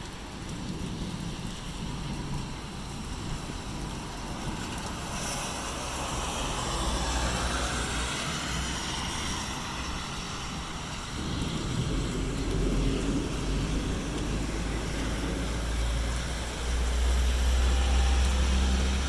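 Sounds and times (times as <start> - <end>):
rain falling: 0.0 - 19.0
wind buffeting microphone: 0.0 - 19.0
low rumble: 10.6 - 19.0.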